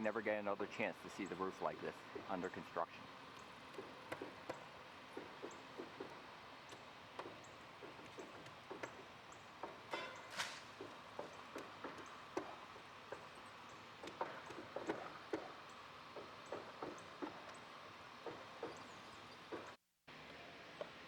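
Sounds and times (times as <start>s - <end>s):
distant hammering on roof: 3.6s - 19.8s.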